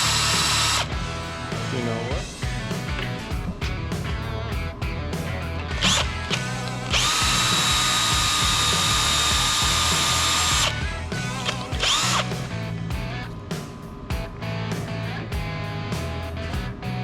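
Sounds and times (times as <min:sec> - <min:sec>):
electric drill drilling: 0:00.0 - 0:00.9, 0:05.8 - 0:12.4
guitar music: 0:00.0 - 0:17.0.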